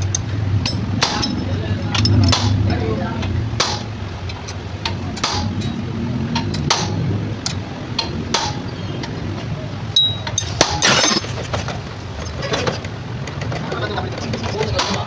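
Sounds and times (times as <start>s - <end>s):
sharp clinks and knocks: 10.4s - 12.3s.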